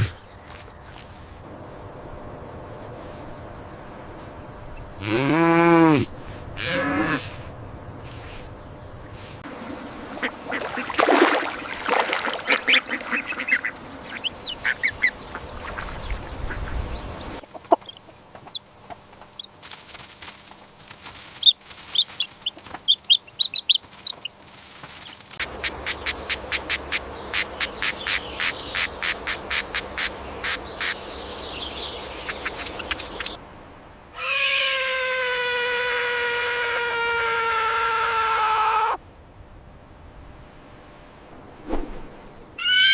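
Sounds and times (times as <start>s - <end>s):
ducks quacking: 10.1s - 11.1s, 12.2s - 18.2s.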